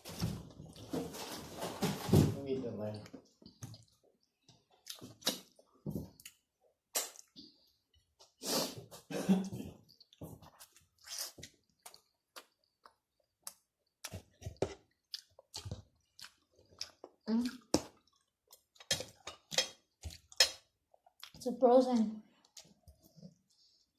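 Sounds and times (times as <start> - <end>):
wet chewing and smacking: 3.0 - 8.4, 9.8 - 21.4.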